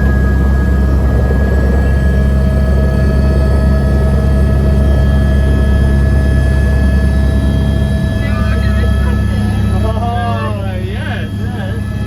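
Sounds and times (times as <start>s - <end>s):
helicopter engine and rotor drone: 0.0s - 12.0s
turbine whine: 0.0s - 12.0s.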